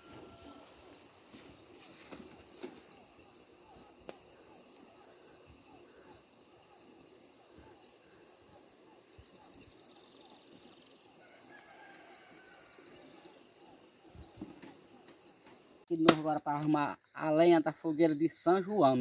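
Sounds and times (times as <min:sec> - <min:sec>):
insects buzzing: 0:00.0 - 0:19.0.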